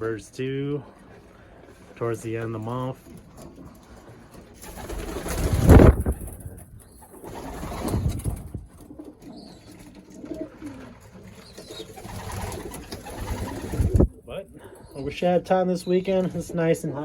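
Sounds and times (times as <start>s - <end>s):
pigeons cooing: 3.2s - 15.2s.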